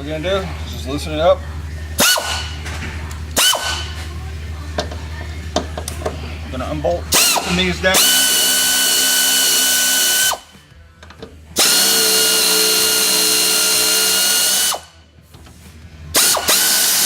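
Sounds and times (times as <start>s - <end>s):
power tool whining: 7.1s - 10.5s, 11.6s - 14.9s, 16.2s - 17.0s.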